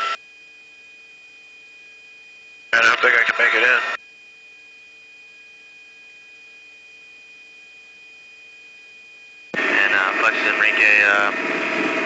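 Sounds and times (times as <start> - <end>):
radio voice: 2.8 - 4.0, 9.6 - 11.4.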